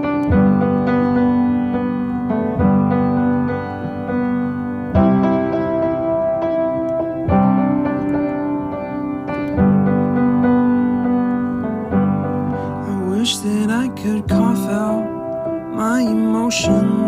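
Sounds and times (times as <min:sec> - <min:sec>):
piano chords: 0:00.0 - 0:17.0
person singing: 0:12.8 - 0:17.0.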